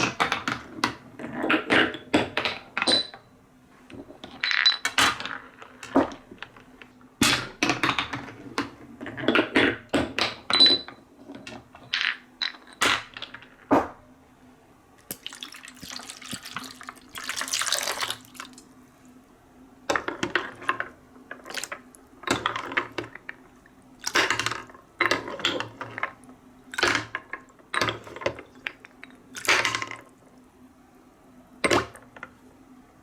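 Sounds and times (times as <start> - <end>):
water splashing: 15.0 - 18.7.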